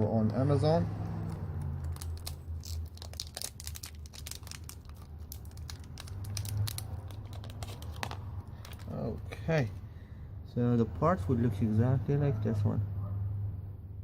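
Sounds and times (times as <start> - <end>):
plastic parts clicking and crinkling: 1.2 - 9.2.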